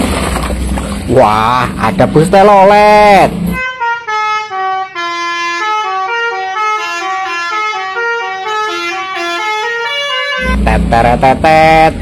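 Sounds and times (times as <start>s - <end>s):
multi-tone bus horn tune: 3.5s - 11.3s.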